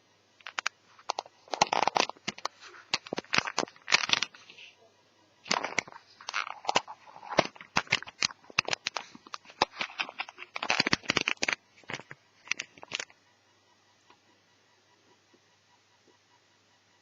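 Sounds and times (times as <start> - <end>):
small plastic and metal parts clicking: 0.4 - 4.6, 5.5 - 13.1.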